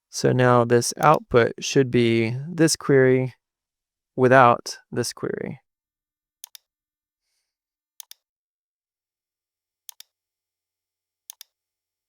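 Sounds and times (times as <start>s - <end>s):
computer mouse clicking: 6.4s - 6.7s, 8.0s - 8.2s, 11.3s - 11.5s.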